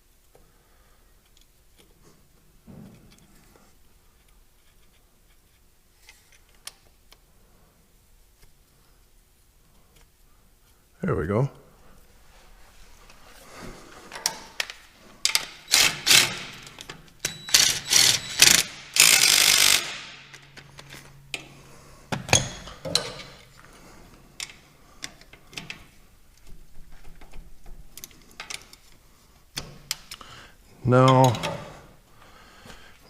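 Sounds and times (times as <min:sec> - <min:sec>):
rustling and scraping: 0:11.9 - 0:15.4
clicks and clanks of metal parts: 0:14.1 - 0:21.6, 0:22.2 - 0:23.6, 0:31.0 - 0:31.7.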